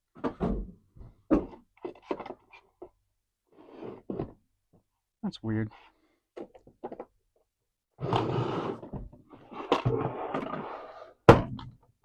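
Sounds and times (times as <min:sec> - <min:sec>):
plastic toy scraping: 0:08.0 - 0:11.2.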